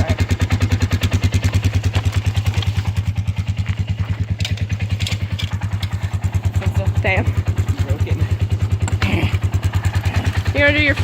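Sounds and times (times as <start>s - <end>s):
small engine idling: 0.0s - 11.0s.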